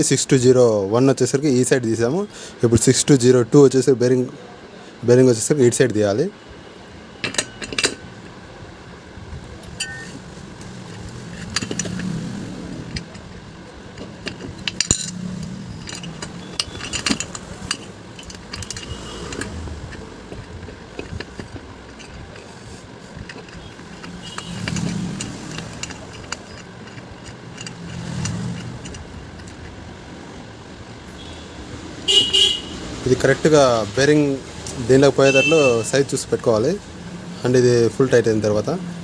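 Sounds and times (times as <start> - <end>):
metal parts clinking and clicking: 7.2 - 8.4, 9.6 - 29.9.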